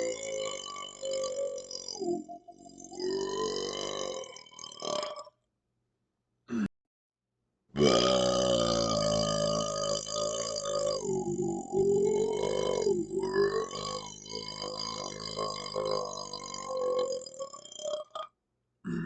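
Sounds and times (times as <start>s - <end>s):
man burping: 6.5s - 6.7s, 7.8s - 19.0s.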